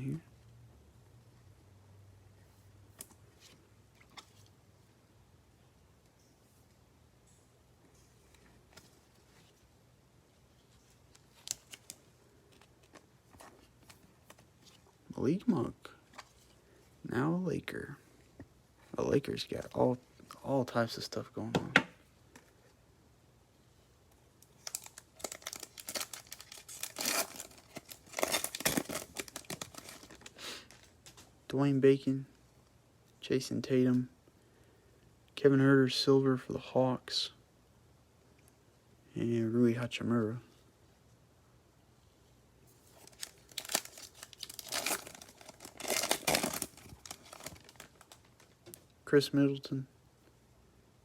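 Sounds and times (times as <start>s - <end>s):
wrapper crinkling and tearing: 24.6s - 31.2s, 43.0s - 48.6s.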